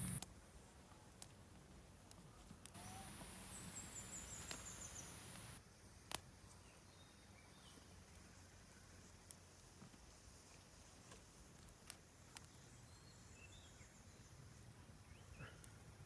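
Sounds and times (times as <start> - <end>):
soft hiss: 0.0 - 16.0.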